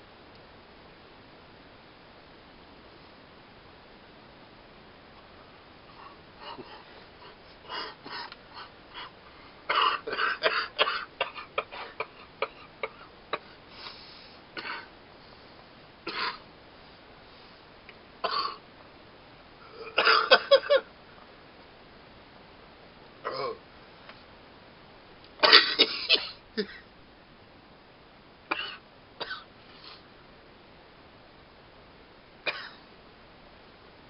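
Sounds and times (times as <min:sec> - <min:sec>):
man coughing: 0:09.7 - 0:13.5, 0:19.8 - 0:20.8, 0:25.4 - 0:26.8.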